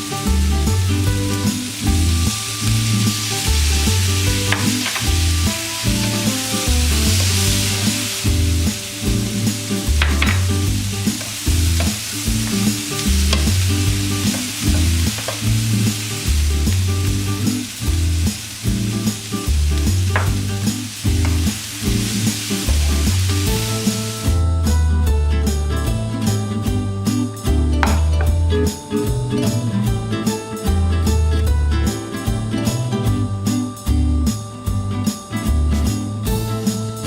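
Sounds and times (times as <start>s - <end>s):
food sizzling in a frying pan: 0.0s - 24.8s
background music with bass line: 0.0s - 37.0s
utensil clicking against pan: 4.4s - 5.3s, 10.0s - 13.6s, 14.2s - 15.8s.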